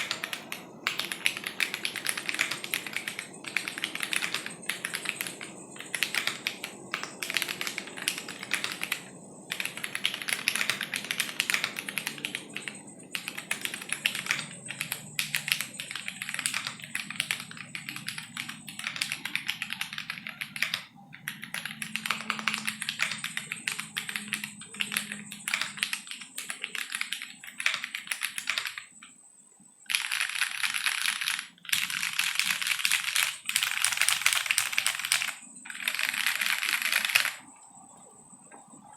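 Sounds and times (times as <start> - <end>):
mechanical keyboard key clacks: 0.0 - 28.9.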